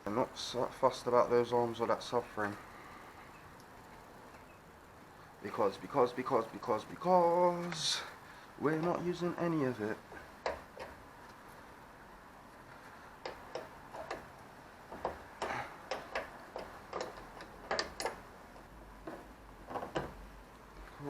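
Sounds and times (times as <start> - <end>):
hand tools clicking: 15.0 - 18.2.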